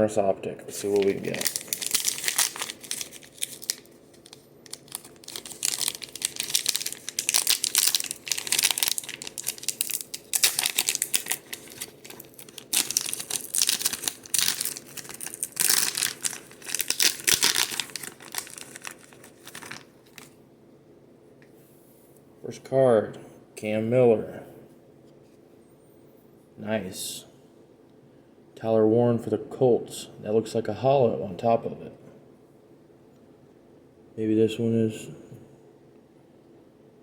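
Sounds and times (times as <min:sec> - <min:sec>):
plastic wrapper crinkling: 0:00.8 - 0:20.4.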